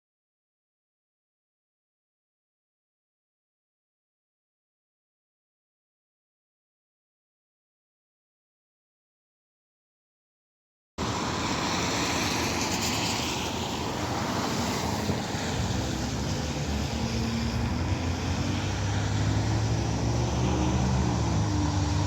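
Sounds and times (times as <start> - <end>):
traffic noise: 11.0 - 22.0.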